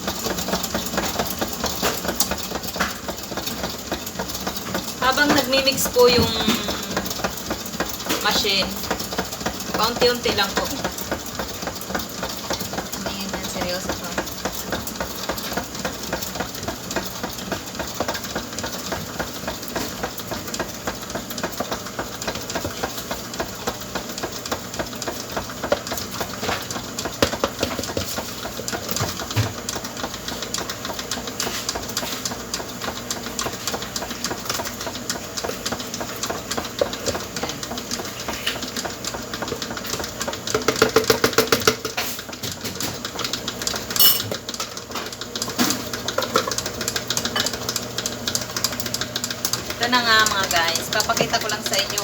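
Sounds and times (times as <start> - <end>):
electric mixer whirring: 0.0 - 32.4.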